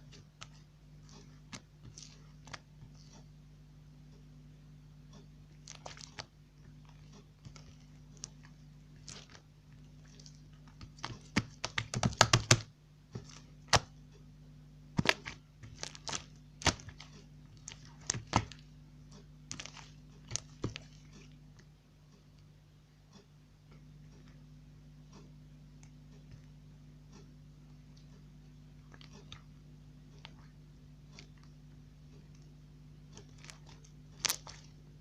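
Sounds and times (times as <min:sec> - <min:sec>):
slime clicking and popping: 0:10.2 - 0:13.9, 0:15.0 - 0:18.6, 0:33.2 - 0:34.7.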